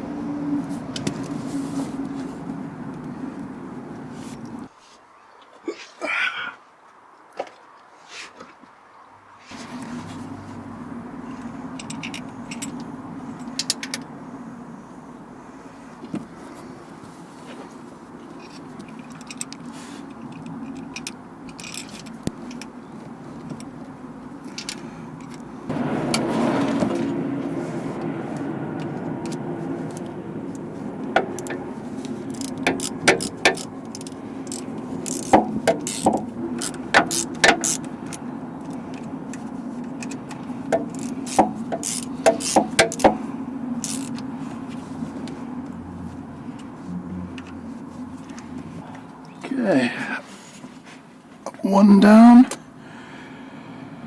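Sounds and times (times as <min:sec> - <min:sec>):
steady low hum: 0:00.0 - 0:04.7, 0:09.6 - 0:31.1
hand tools clicking and clinking: 0:00.1 - 0:04.7, 0:09.5 - 0:25.7, 0:32.3 - 0:37.9, 0:40.8 - 0:43.2.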